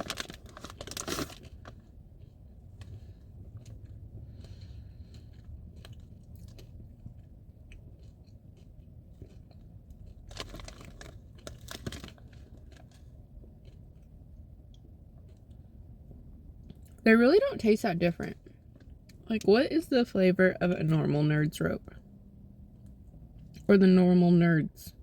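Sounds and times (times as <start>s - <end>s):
candy crunching while chewing: 0.0s - 15.6s
low steady hum: 0.0s - 25.0s.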